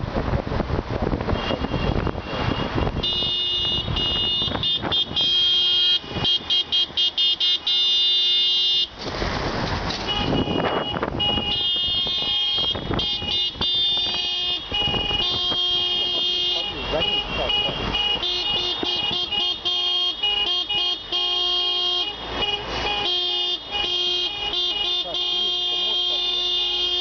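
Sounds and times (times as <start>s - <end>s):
wind buffeting microphone: 0.0s - 5.4s, 9.0s - 16.2s
car horns honking: 1.2s - 9.0s, 9.8s - 27.0s.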